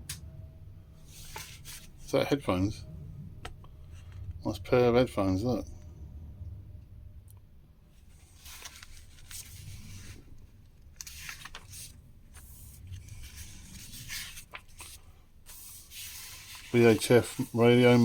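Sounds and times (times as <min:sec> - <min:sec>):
magazine pages rustling: 0:01.1 - 0:02.2, 0:08.0 - 0:18.0.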